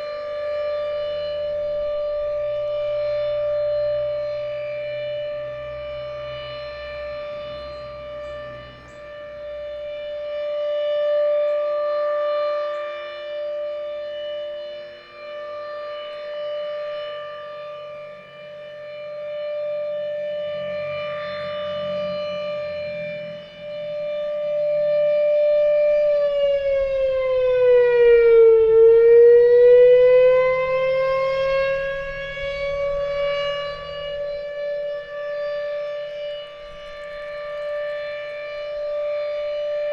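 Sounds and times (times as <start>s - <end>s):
rotating warning siren: 0.0s - 39.9s
wind rumble on microphone: 20.3s - 39.9s.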